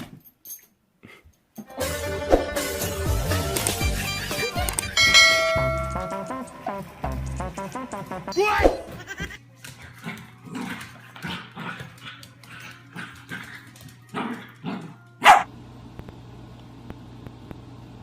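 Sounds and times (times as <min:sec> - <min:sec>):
dog barking sharply: 0:15.2 - 0:15.5.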